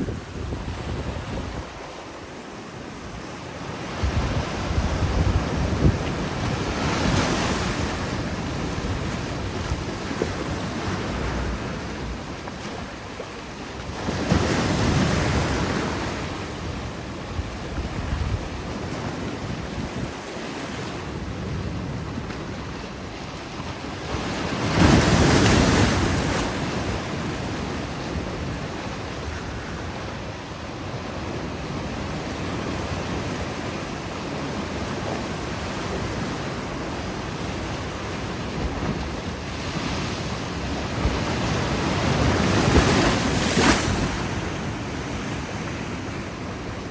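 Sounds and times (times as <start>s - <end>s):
waves crashing: 0.0s - 46.9s
surf breaking on sandy beach: 35.2s - 46.9s.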